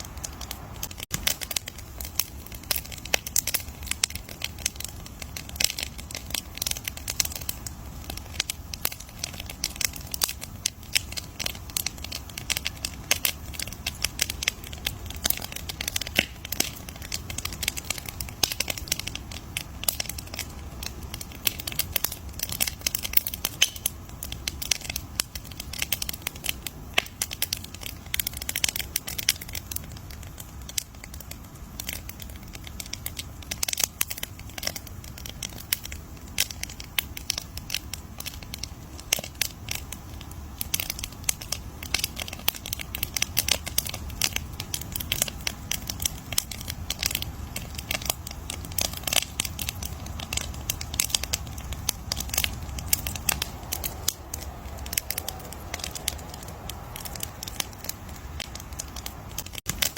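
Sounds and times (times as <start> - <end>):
campfire wood crackling and popping: 0.0 - 59.9
low rumble of flames: 0.0 - 59.9.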